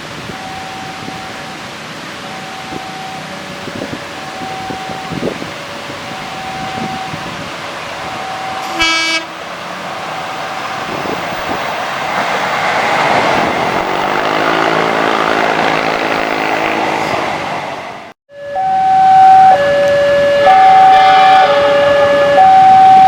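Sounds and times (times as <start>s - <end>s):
train wheel noise: 0.0s - 18.1s
diesel locomotive engine running: 0.1s - 18.1s
steady warning tone: 2.3s - 7.4s, 8.0s - 9.4s
train horn blast: 8.6s - 9.4s, 19.1s - 22.4s.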